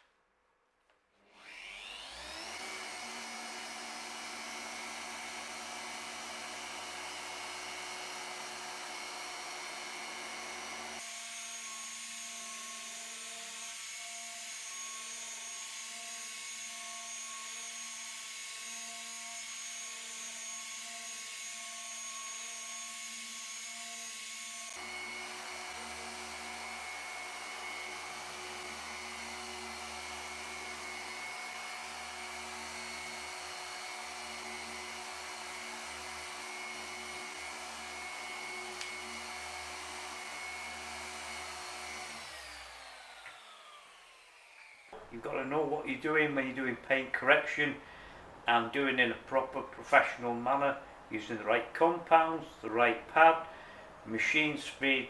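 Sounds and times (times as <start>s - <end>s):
electric polisher spinning: 1.2s - 45.0s.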